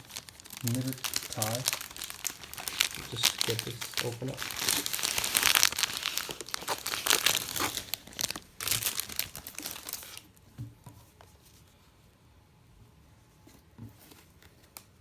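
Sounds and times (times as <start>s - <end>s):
packaging crinkling and tearing: 0.0s - 10.4s.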